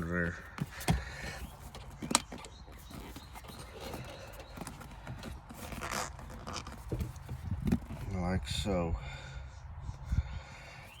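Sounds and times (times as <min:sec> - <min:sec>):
seat cover rustling and scuffing: 0:00.0 - 0:08.2.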